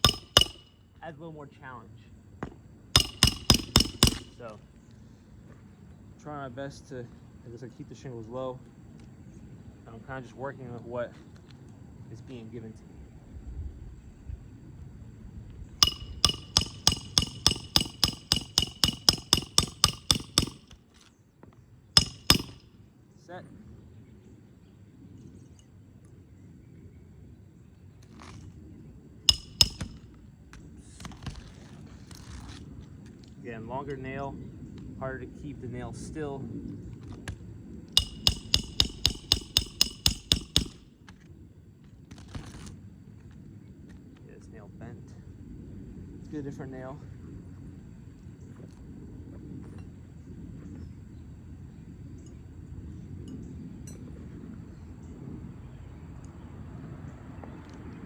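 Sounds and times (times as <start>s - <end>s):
ringing metal hammer strikes: 0.0s - 0.9s, 3.0s - 4.5s, 15.8s - 20.8s, 22.0s - 22.7s, 29.3s - 30.1s, 38.0s - 41.0s.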